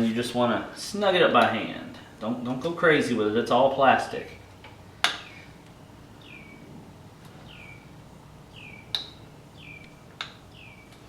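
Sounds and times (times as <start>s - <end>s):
bird chirping: 6.1s - 6.7s, 7.4s - 11.0s.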